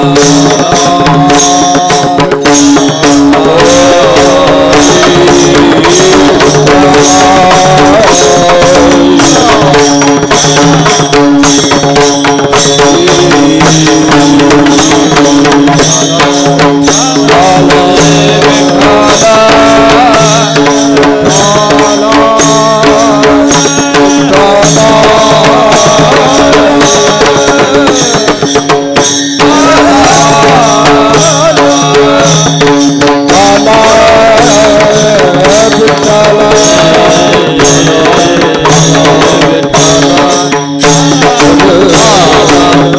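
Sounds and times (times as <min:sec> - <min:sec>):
hand drums: 0:00.0 - 0:42.9
small cymbals: 0:00.0 - 0:42.9.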